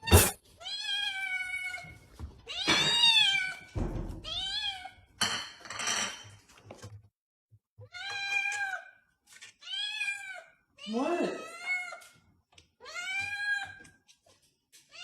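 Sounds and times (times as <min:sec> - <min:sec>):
cat meowing: 0:00.0 - 0:05.0, 0:07.8 - 0:09.0.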